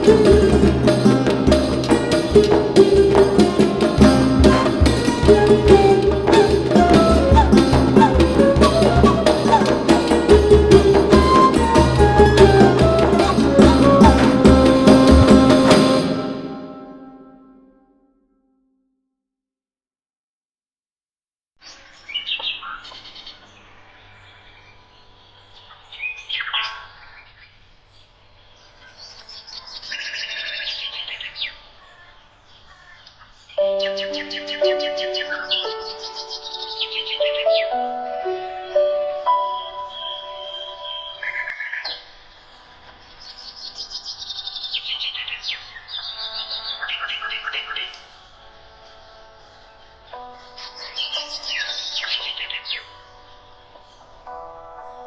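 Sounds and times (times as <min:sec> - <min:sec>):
held musical chord: 0:00.0 - 0:17.7
songbird chirping: 0:28.8 - 0:54.2.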